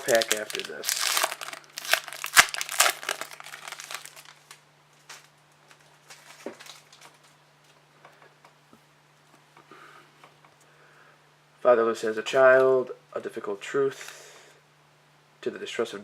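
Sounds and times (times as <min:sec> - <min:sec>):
wrapper tearing and crinkling: 0:00.0 - 0:07.4.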